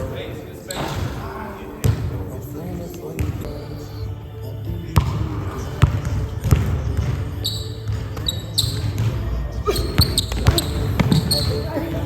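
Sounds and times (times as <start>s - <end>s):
basketball bouncing on gym floor: 5.8s - 12.0s
sneaker squeaks: 7.3s - 12.0s.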